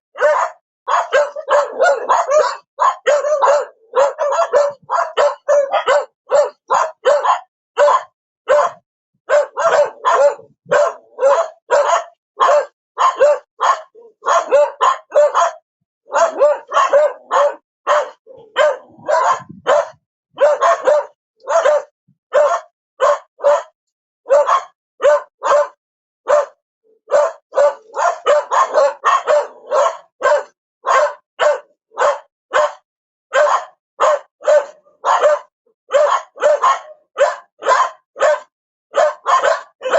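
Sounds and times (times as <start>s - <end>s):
dog barking: 0.1s - 39.9s.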